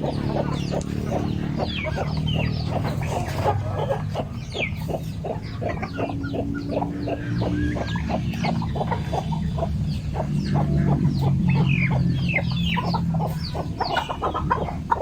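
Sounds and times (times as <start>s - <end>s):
chickens clucking: 0.0s - 15.0s
steady low hum: 0.0s - 15.0s.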